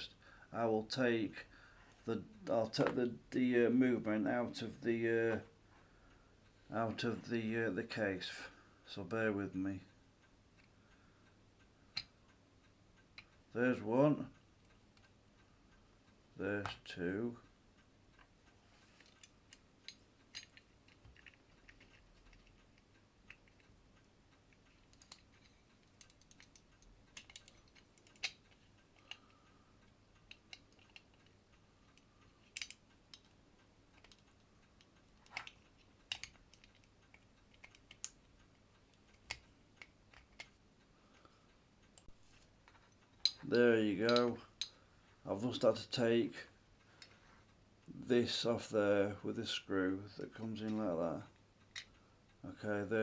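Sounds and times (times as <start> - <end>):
small tools clicking on watch: 10.2 - 13.5, 17.4 - 44.9, 51.6 - 52.4.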